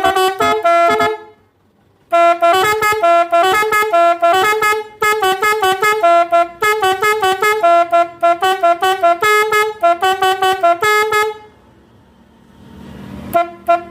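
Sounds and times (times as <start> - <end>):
horn playing quick repeating tune: 0.0 - 1.4, 2.1 - 11.4.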